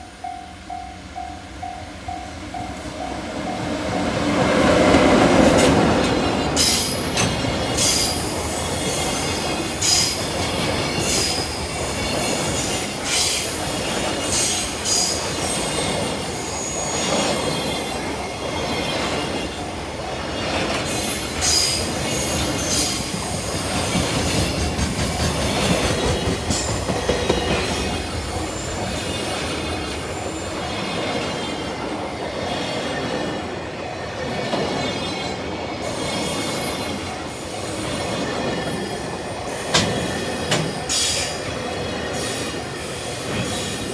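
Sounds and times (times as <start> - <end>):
electric locomotive passing: 0.0 - 43.9
level-crossing warning bell: 0.0 - 43.9.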